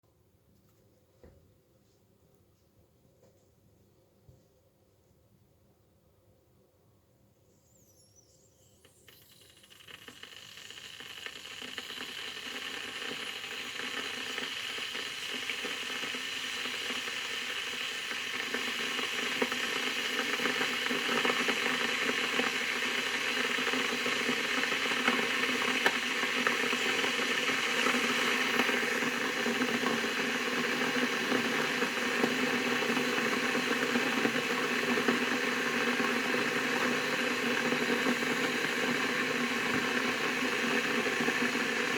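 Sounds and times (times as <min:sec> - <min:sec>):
kettle hissing: 0:08.2 - 0:41.9
kettle crackling ticks: 0:08.8 - 0:41.9.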